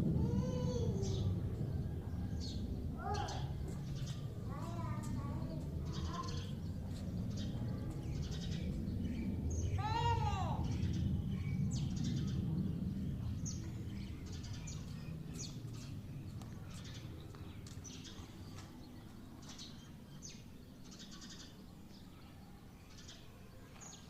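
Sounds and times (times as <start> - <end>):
low rumble: 0.0 - 20.0
small birds chirping: 0.3 - 24.0.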